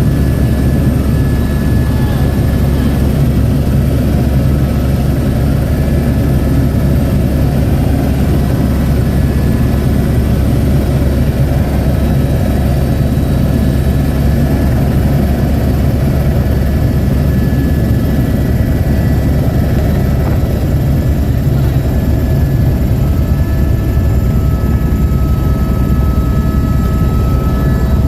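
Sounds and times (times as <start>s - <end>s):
helicopter engine and rotor: 0.0s - 28.0s.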